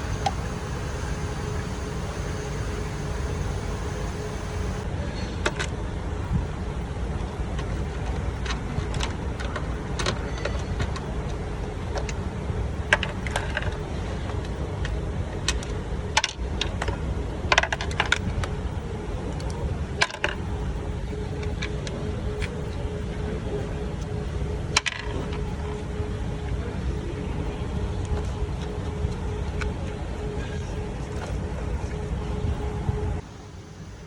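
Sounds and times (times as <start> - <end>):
steady low rumble: 0.0 - 4.8.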